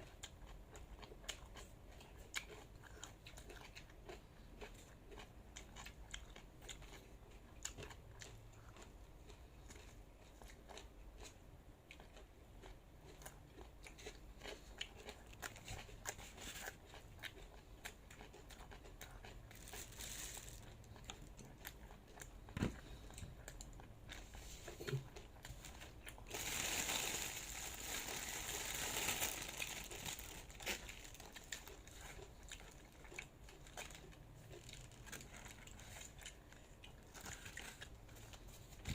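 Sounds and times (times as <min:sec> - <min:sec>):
crinkling and crunching: 0:13.9 - 0:38.9.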